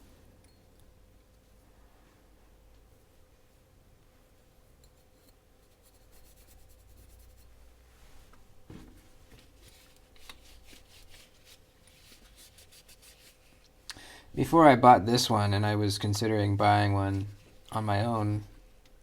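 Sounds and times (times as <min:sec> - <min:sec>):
blade rubbing and scratching: 0:05.0 - 0:07.5.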